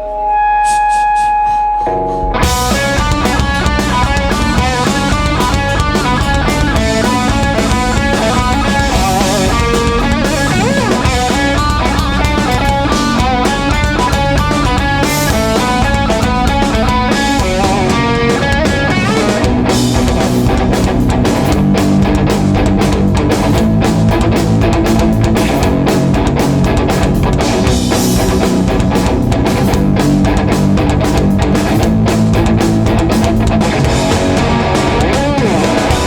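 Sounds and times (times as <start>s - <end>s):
punk band playing: 2.3s - 36.0s.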